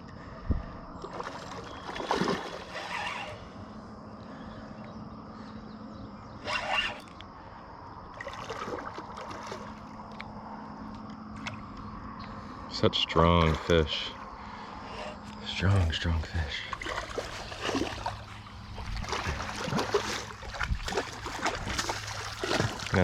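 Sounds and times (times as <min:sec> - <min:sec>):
fish thrashing in water: 0:01.0 - 0:03.4, 0:08.2 - 0:10.0, 0:16.6 - 0:23.0.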